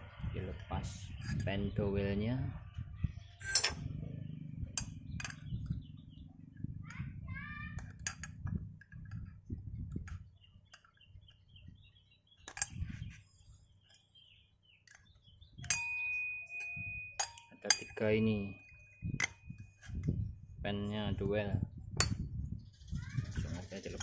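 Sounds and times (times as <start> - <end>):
low rumble: 0.0 - 10.2
birds chirping: 0.0 - 24.0
metal parts clinking: 3.4 - 3.9, 4.8 - 5.5, 7.8 - 9.4, 12.4 - 12.8, 15.6 - 20.1.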